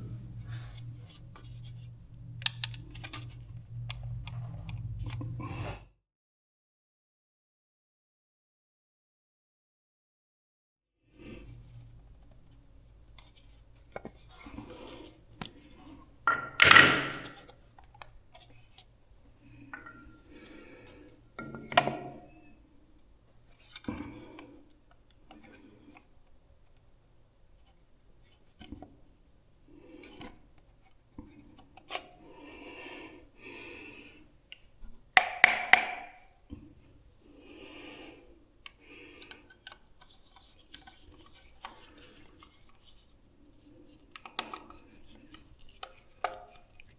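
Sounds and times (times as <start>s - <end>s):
plastic and metal clicks: 2.4s - 3.3s.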